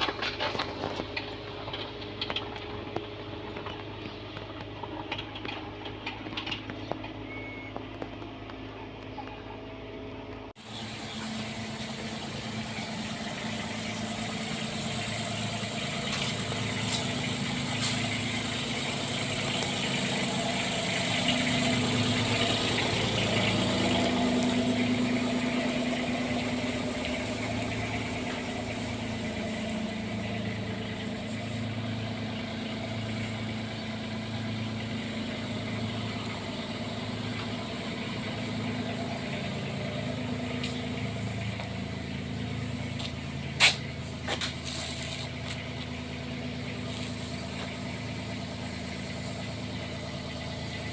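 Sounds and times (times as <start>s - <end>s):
excavator diesel engine running: 0.0s - 50.9s.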